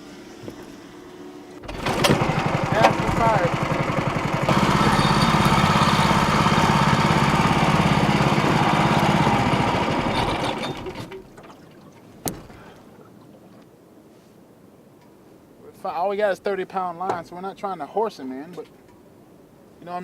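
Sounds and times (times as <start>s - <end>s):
outboard motor running: 1.6s - 11.7s.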